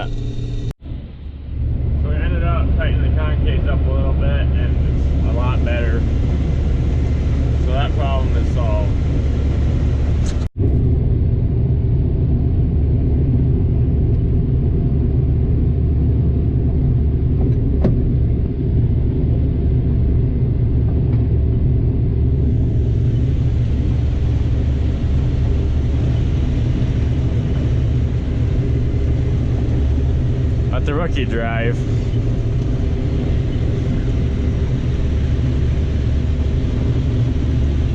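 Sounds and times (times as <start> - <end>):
diesel engine droning: 0.0 - 37.9.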